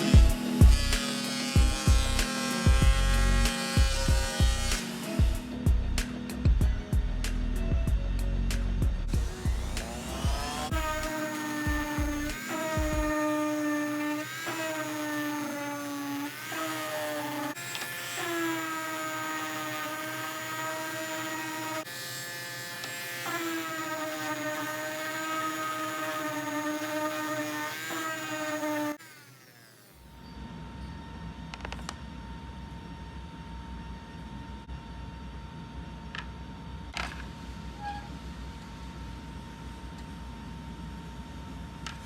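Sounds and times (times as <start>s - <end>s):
power tool motor whining: 0.0s - 5.6s, 9.1s - 30.2s.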